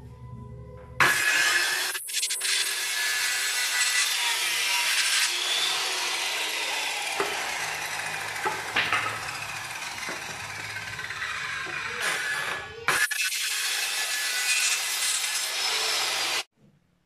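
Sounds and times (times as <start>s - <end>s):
circular saw cutting wood: 1.0s - 16.5s
sharp knocks: 8.4s - 9.3s.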